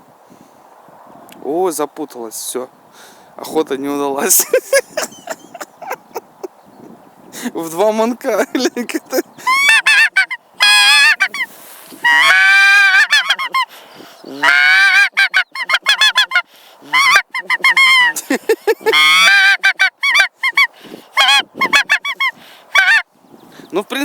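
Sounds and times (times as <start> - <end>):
goose call honks: 9.5 - 23.0.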